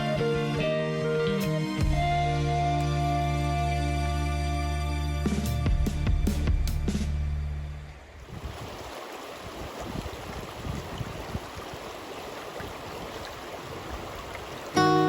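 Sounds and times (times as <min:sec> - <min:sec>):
river water rushing: 0:08.1 - 0:15.0
acoustic guitar music: 0:14.8 - 0:15.0.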